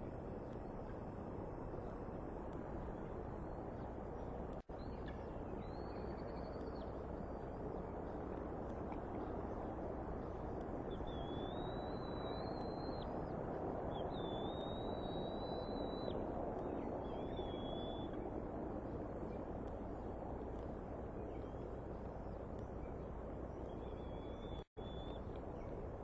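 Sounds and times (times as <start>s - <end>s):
steady outdoor rush: 0.0s - 26.0s
faint bird chirps: 2.8s - 8.2s, 9.1s - 18.2s, 21.2s - 25.8s
eaglets whining: 2.8s - 19.4s.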